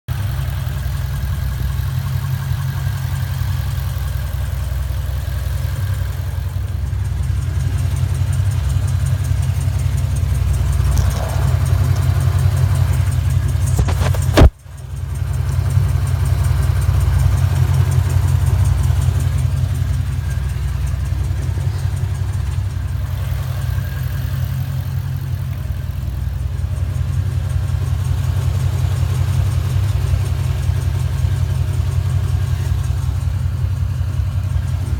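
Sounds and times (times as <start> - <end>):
engine ticking: 0.0 - 34.9
car engine idling: 0.1 - 34.9
sharp loud knock: 13.7 - 14.6.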